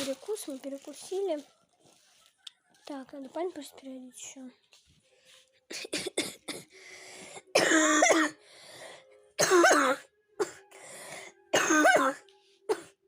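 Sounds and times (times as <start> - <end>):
woman coughing hard: 5.7 - 6.8, 7.4 - 8.4, 9.4 - 10.7, 11.5 - 13.0
noisy breaths drawn in: 6.7 - 7.5, 8.4 - 9.2, 10.7 - 11.4.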